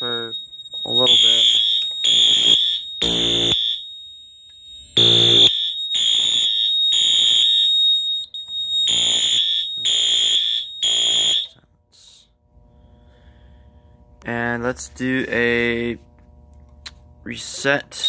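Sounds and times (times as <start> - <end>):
fire alarm horn blasts: 0.0 - 11.6.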